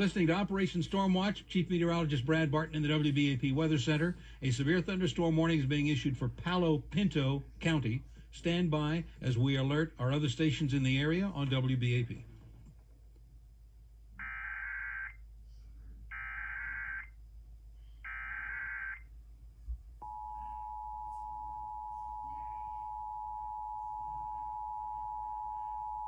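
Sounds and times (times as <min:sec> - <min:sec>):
two-tone attention signal: 0:20.0 - 0:26.0.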